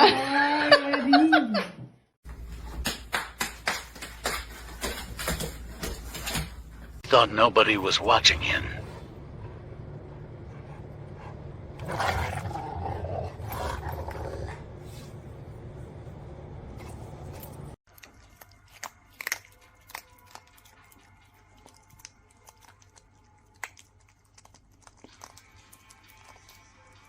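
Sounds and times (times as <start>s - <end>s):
steady low hum: 3.8s - 17.8s
dog growling: 10.6s - 14.8s.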